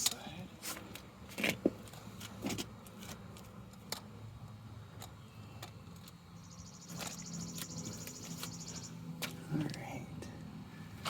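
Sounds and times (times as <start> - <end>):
high-pitched insect trill: 6.4 - 9.0.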